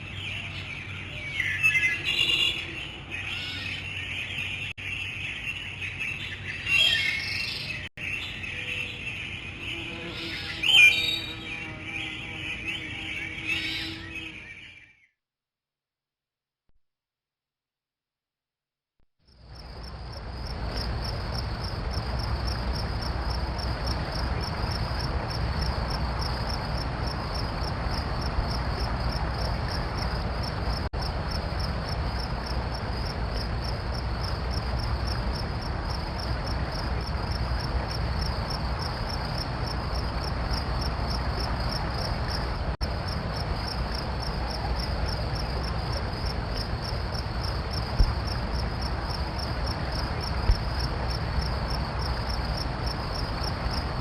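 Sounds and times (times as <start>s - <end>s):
crickets chirping: 19.3s - 54.0s
low rumble and hiss: 19.3s - 54.0s.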